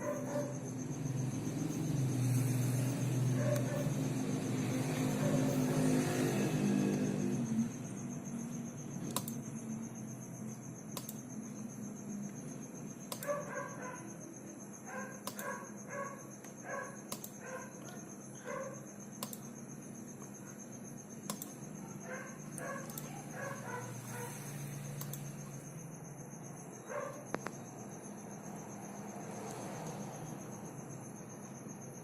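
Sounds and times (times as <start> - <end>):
sharp click: 9.1 - 9.4, 11.0 - 11.2, 16.4 - 17.4, 19.2 - 19.4, 21.3 - 21.6.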